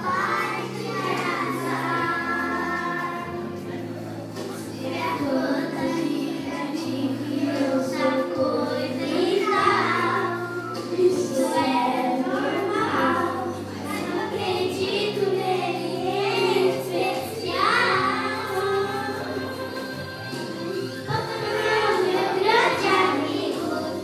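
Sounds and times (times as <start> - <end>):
children singing: 0.0 - 24.0
instrumental accompaniment: 0.0 - 24.0.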